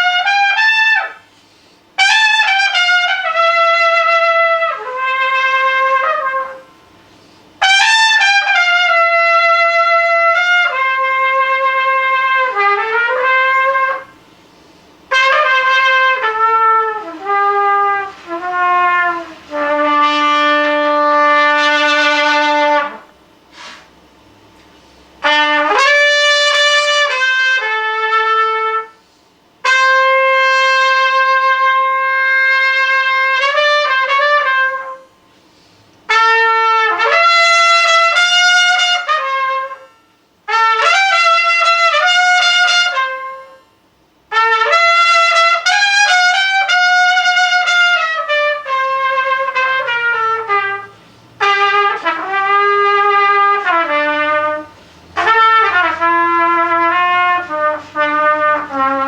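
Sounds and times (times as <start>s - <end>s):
wind instrument melody: 2.0s - 6.7s, 15.1s - 23.1s, 25.2s - 29.0s, 44.3s - 59.0s.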